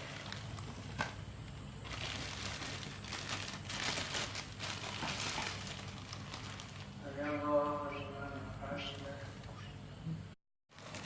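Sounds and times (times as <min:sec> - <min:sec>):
packaging rustling and crinkling: 0:00.0 - 0:01.1, 0:01.8 - 0:07.0, 0:10.7 - 0:11.0
low background hum: 0:00.0 - 0:11.0.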